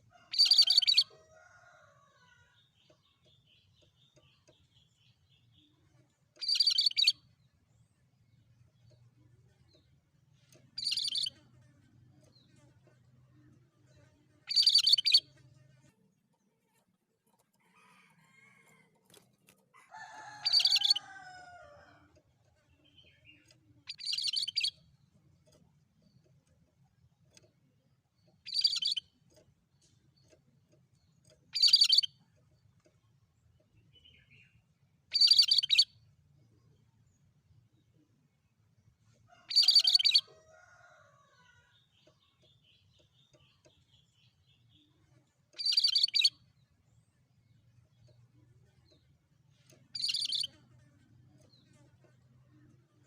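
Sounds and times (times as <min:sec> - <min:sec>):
bird harsh high-pitched calls: 0:00.3 - 0:01.1, 0:14.5 - 0:15.2, 0:20.4 - 0:21.1, 0:28.5 - 0:29.0, 0:31.6 - 0:32.1, 0:35.2 - 0:35.9, 0:39.5 - 0:40.3, 0:45.6 - 0:46.4, 0:50.0 - 0:50.6.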